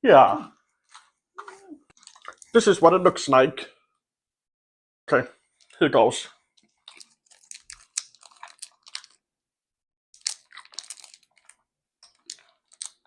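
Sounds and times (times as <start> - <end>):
candy crunching in the mouth: 1.9 - 2.6, 6.8 - 9.2, 10.2 - 13.0.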